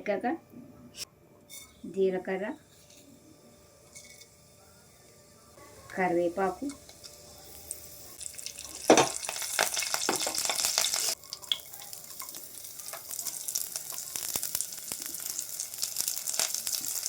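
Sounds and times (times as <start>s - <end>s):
leaves sizzling in hot oil: 3.7s - 17.0s.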